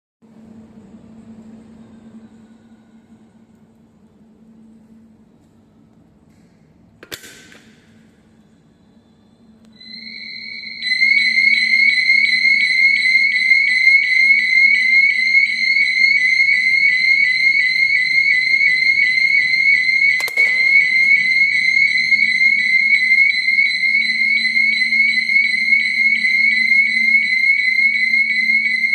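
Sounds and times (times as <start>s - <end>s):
fire alarm pulsing tone: 8.1s - 28.9s.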